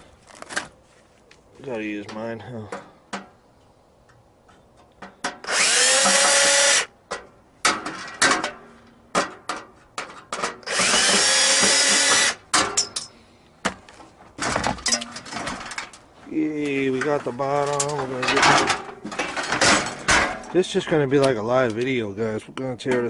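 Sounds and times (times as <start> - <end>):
cordless drill motor spinning: 5.5 - 6.9, 10.7 - 12.4.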